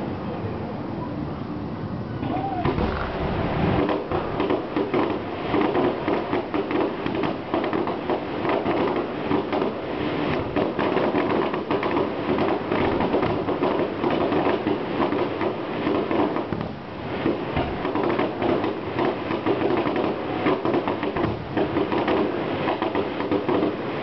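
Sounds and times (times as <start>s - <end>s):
fireworks popping and crackling: 2.6s - 24.0s.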